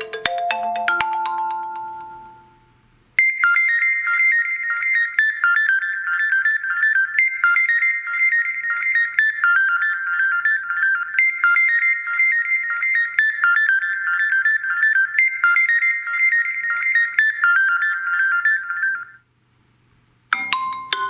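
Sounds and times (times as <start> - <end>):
phone ringtone struck notes: 0.0 - 4.5, 20.3 - 21.0
high-pitched ringtone tune: 0.0 - 19.1, 20.3 - 21.0.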